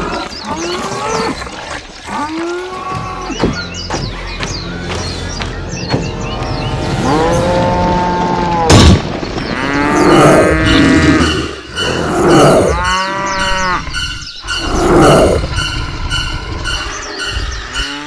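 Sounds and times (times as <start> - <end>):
cattle mooing: 9.5 - 13.9.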